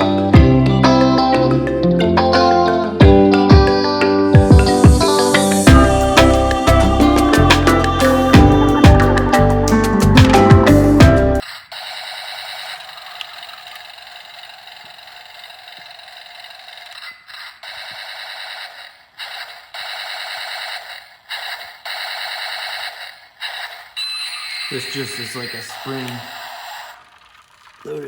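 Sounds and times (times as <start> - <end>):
toy electric motor whining: 11.3 - 28.0.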